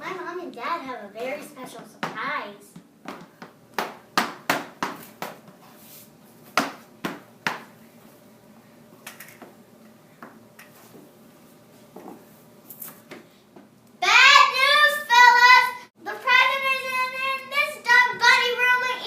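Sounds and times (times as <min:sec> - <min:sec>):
sharp knocks and thumps: 0:01.4 - 0:05.5.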